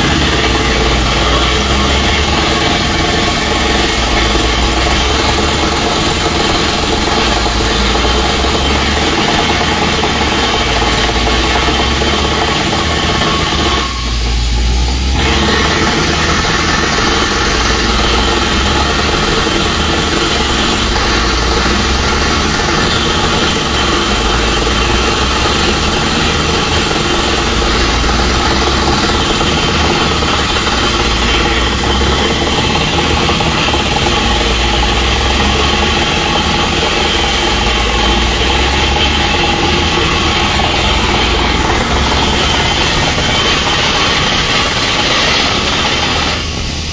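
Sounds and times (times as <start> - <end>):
drilling rig diesel engine drone: 0.0 - 46.9.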